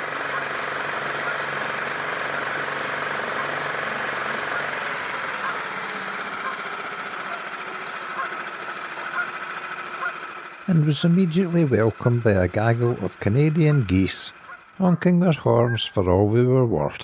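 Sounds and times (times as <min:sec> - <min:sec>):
outboard motor running: 0:00.0 - 0:17.0.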